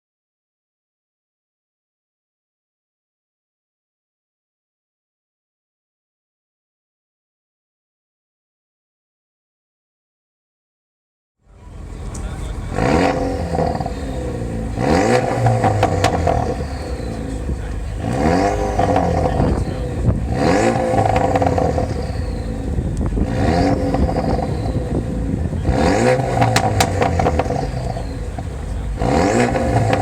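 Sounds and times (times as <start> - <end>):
car engine revving: 11.5 - 30.0
exhaust crackles and pops: 11.9 - 30.0.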